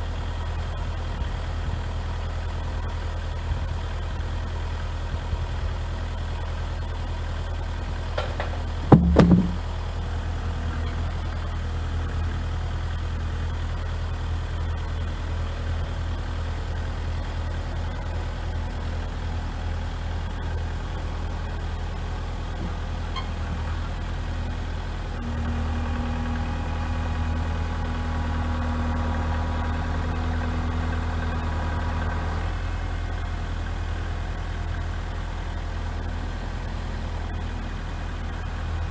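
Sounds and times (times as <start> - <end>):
tractor diesel engine idling: 0.0 - 38.9
loud clunk: 8.2 - 9.7.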